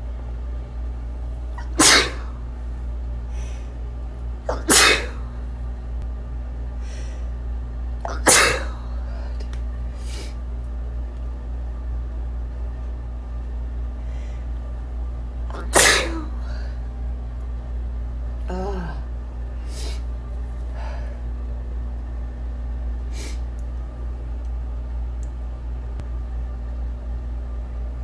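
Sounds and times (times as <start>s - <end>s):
steady low hum: 0.0s - 28.0s
person sneezing: 1.6s - 2.3s, 4.5s - 5.2s, 8.1s - 8.8s, 15.5s - 16.6s.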